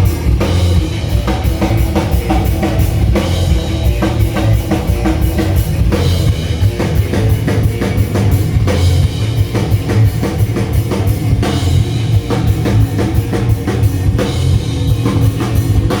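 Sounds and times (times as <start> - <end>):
drum kit beating: 0.0 - 16.0
rock band playing: 0.0 - 16.0.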